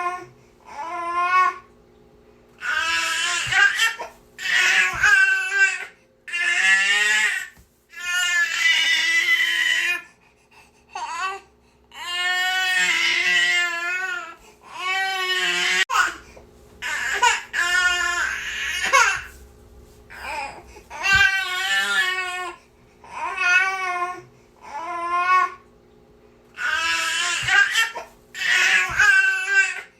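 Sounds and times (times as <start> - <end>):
infant crying: 2.6 - 10.1, 11.0 - 16.2, 16.8 - 19.4, 20.1 - 25.6, 26.6 - 29.9.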